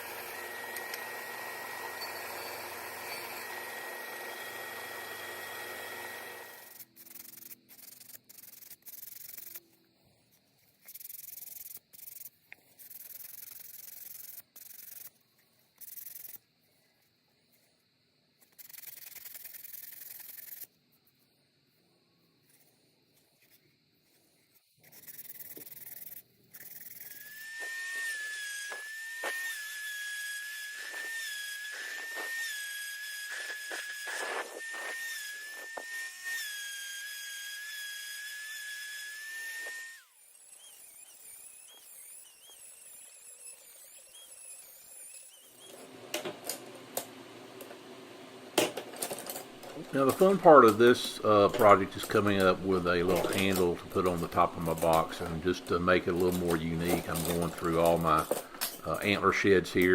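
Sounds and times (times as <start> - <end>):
wood being sanded: 0.0 - 9.6, 24.9 - 45.7, 49.8 - 59.9
rotary tool high whine: 0.0 - 16.9, 23.4 - 59.9.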